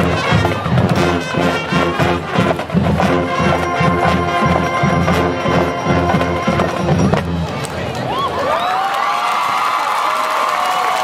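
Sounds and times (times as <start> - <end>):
brass playing: 0.0 - 7.5
steady drum beat: 0.0 - 7.6.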